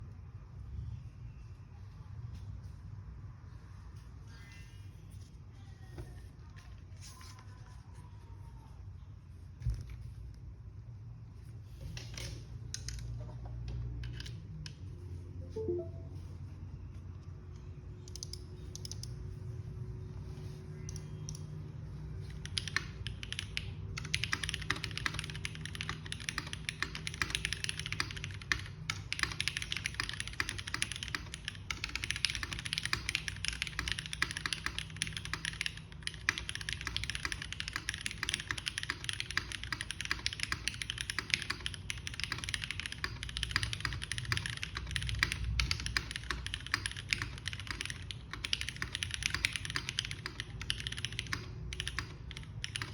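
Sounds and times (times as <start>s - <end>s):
typing on mechanical keyboard: 22.2s - 52.9s.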